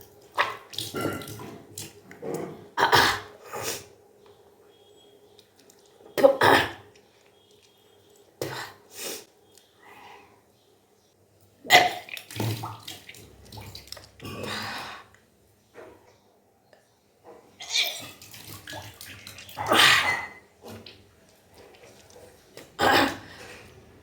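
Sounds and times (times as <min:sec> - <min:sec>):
water splashing: 0:11.7 - 0:14.5, 0:17.7 - 0:23.5.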